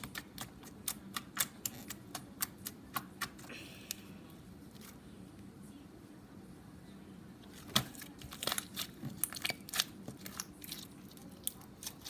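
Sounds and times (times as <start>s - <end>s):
slime being squished: 7.5s - 12.0s.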